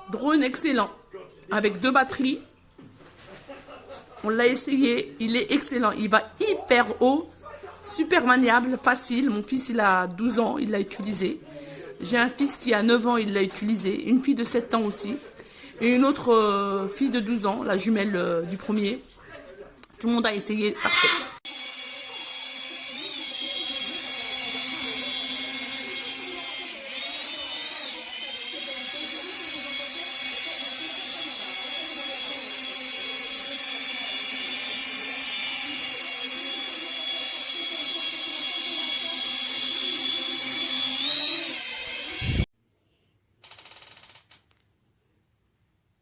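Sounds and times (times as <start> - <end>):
toy drone propellers whining: 21.0 - 42.5.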